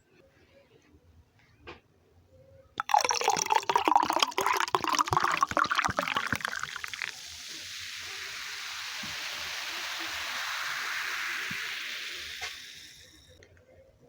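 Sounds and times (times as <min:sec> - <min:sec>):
drink pouring into glass: 0:02.8 - 0:13.3
steady hiss: 0:03.4 - 0:13.4.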